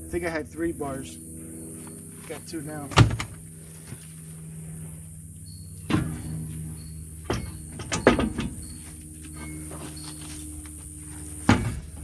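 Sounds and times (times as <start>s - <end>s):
steady low hum: 0.0s - 12.0s
sharp knocks and clanks: 2.9s - 3.4s, 7.2s - 9.9s, 11.4s - 12.0s.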